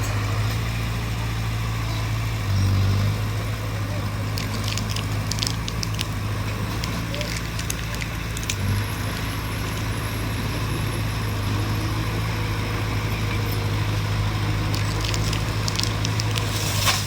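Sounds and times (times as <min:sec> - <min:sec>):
bulldozer diesel engine running: 0:00.0 - 0:17.0
debris cracking and snapping: 0:04.3 - 0:08.8, 0:14.6 - 0:17.0.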